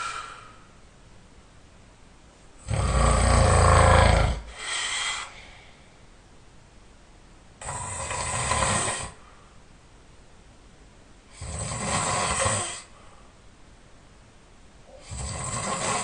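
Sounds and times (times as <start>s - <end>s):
man snoring: 2.6s - 4.6s, 7.6s - 9.2s, 11.4s - 12.9s, 14.9s - 16.0s.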